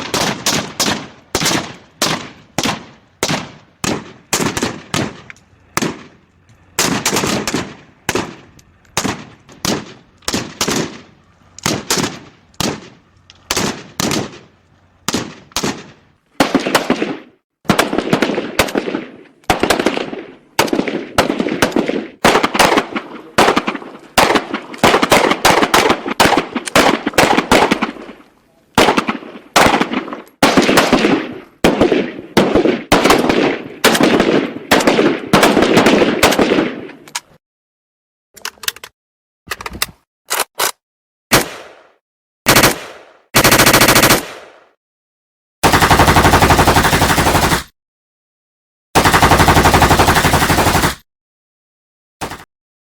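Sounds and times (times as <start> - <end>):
rifle single shots: 0.0 - 37.0, 41.3 - 41.9, 42.5 - 44.6
automatic gunfire bursts: 15.1 - 28.1, 42.5 - 44.6, 45.6 - 47.7, 49.0 - 51.0.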